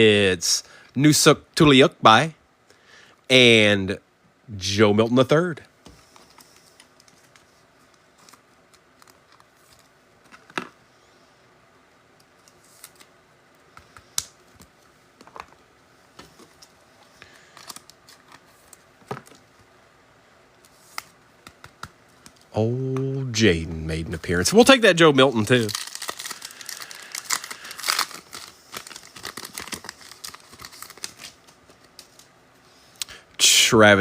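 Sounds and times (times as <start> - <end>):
cards clicking and tapping: 20.9 - 23.2
foil packs rustling: 24.2 - 32.3.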